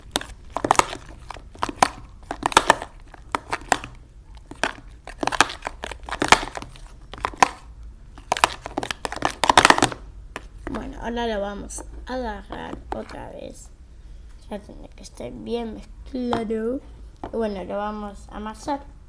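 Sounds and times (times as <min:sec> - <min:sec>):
slime squishing and crackling: 0:00.0 - 0:10.9.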